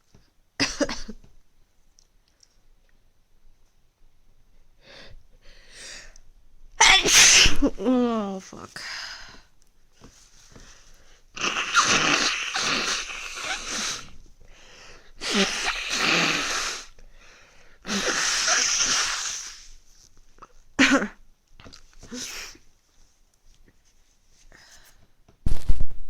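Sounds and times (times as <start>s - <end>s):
person blowing nose: 6.8s - 7.8s, 11.4s - 14.2s, 15.2s - 17.0s, 17.8s - 19.8s.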